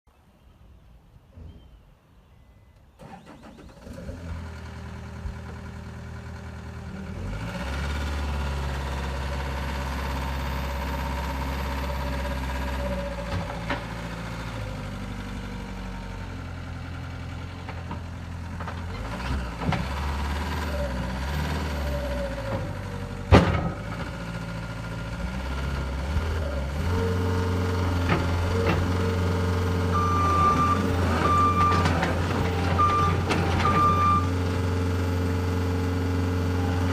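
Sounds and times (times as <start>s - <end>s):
diesel engine starting and running: 2.9s - 36.9s
reverse alarm beeping: 29.9s - 31.8s, 32.8s - 34.3s.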